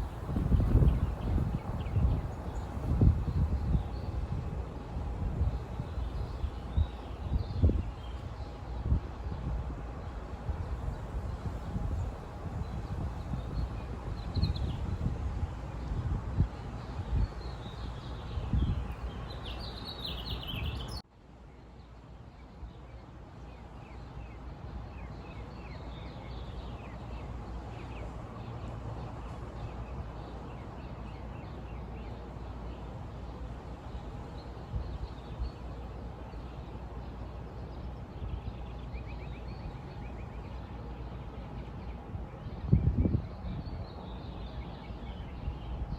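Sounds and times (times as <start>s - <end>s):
birds chirping: 16.6s - 21.0s, 23.5s - 45.9s.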